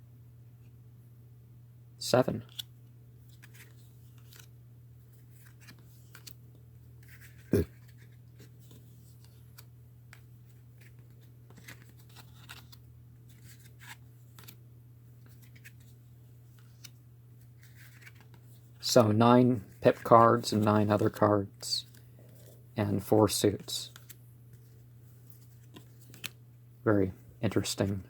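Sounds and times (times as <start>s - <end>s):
cards rustling and clicking: 2.4s - 6.4s, 7.0s - 14.6s, 15.2s - 22.6s, 23.4s - 26.4s.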